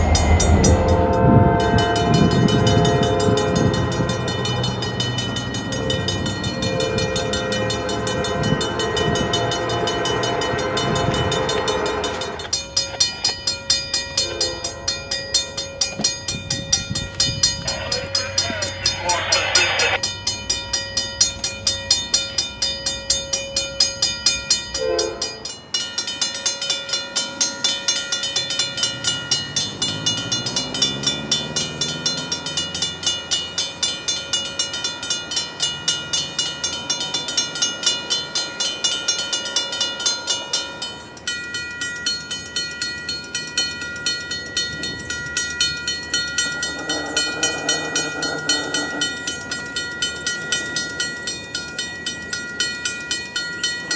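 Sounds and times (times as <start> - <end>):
low rising drone: 0.0 - 4.9, 46.1 - 50.7
railroad crossing bells clanging: 0.0 - 53.9.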